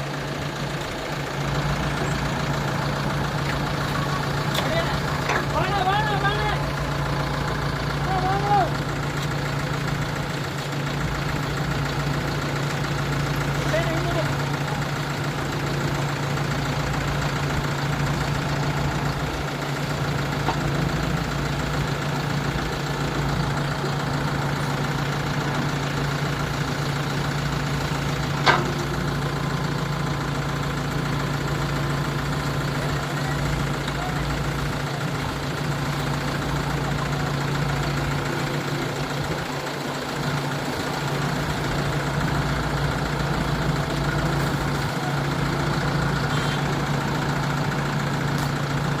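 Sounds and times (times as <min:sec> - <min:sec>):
diesel engine running: 0:00.0 - 0:49.0
metallic clank: 0:28.3 - 0:29.1.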